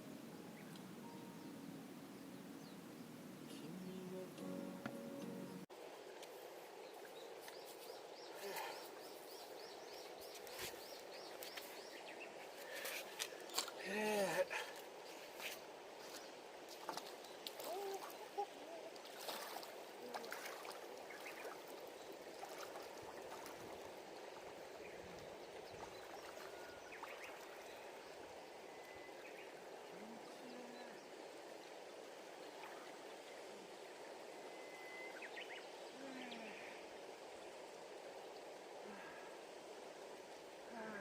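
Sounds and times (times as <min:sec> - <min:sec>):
river water flowing: 0:00.0 - 0:41.0.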